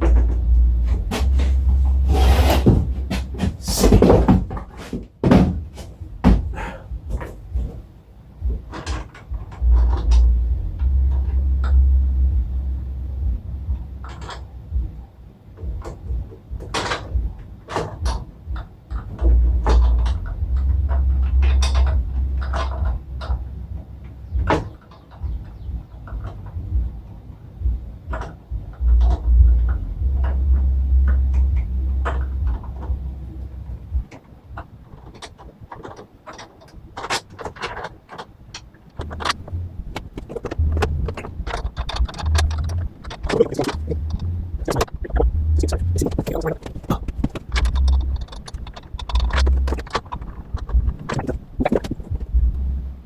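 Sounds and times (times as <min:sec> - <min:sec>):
low rumble: 0:00.0 - 0:04.6, 0:06.0 - 0:34.6, 0:39.0 - 0:53.0
knocks and clunks of handiwork: 0:00.0 - 0:10.3, 0:15.6 - 0:26.9, 0:33.9 - 0:52.4.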